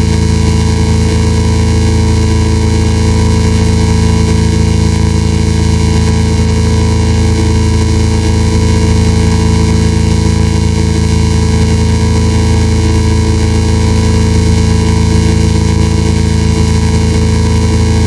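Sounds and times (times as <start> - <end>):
strong low hum: 0.0 - 18.0.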